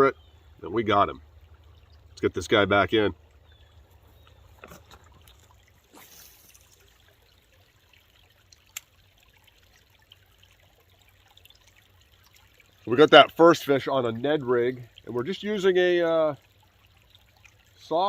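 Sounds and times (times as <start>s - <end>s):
water trickling: 0.0s - 18.0s
fish splashing into water: 4.4s - 9.8s.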